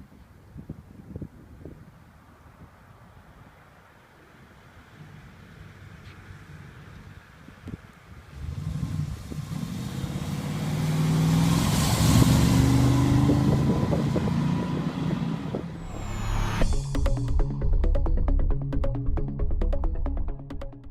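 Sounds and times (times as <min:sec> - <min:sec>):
car engine accelerating: 0:08.3 - 0:17.2.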